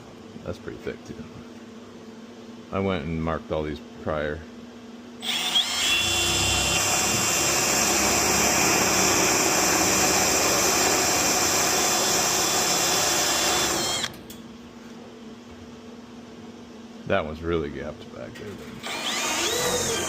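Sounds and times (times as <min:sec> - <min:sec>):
drill high whine with hiss: 0:05.2 - 0:14.1, 0:18.8 - 0:20.0.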